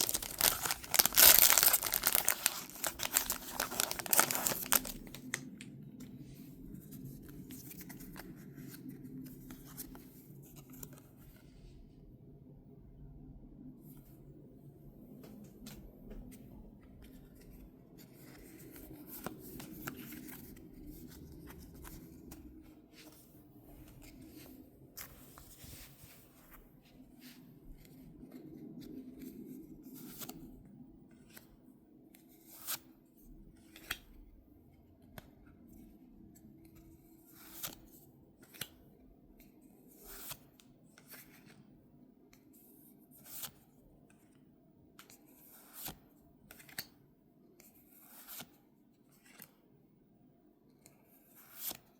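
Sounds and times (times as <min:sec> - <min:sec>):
cards and packaging rustling: 0:00.0 - 0:05.7.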